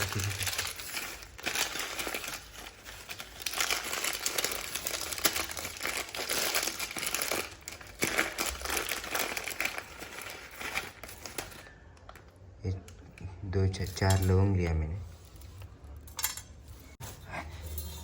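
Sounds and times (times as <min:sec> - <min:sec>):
spice packet crinkling: 0:00.0 - 0:12.4.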